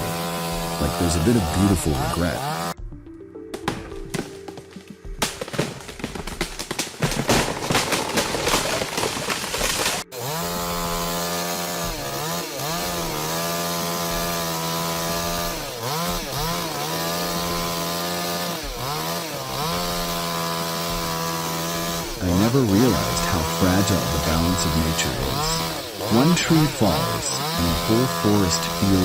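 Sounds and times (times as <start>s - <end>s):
chainsaw cutting: 0.0s - 2.8s, 3.6s - 29.0s
dense cracking and crashing: 3.6s - 10.3s.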